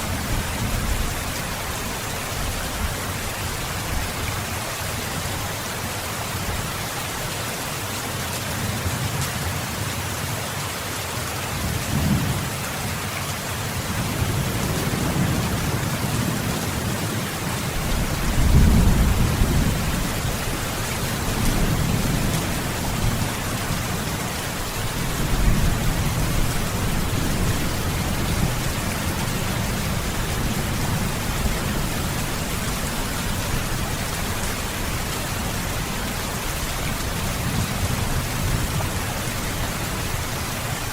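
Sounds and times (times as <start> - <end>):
rain falling: 0.0 - 40.9
thunder rumbles: 14.0 - 17.2, 17.8 - 24.2, 24.9 - 35.7.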